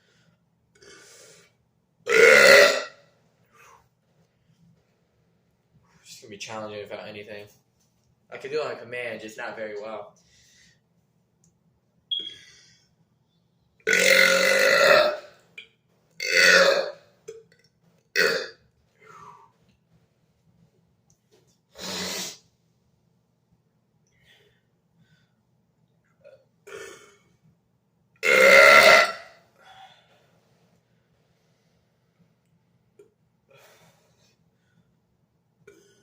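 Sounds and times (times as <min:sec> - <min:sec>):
man burping: 0:02.1 - 0:03.0, 0:13.9 - 0:15.3, 0:16.2 - 0:17.4, 0:18.2 - 0:18.6, 0:26.2 - 0:27.3, 0:28.2 - 0:29.3, 0:35.7 - 0:36.0.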